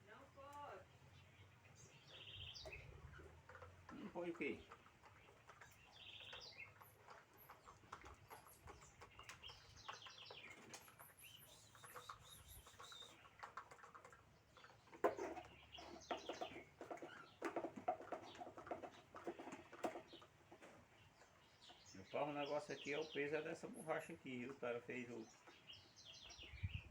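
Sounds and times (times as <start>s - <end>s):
birds chirping: 0.0s - 26.9s
lower pitched bird calls: 8.2s - 13.8s.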